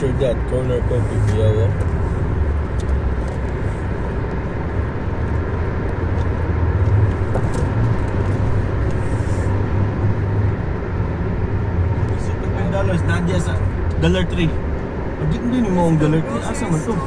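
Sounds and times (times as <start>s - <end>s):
vehicle engine and road noise: 0.0s - 17.0s.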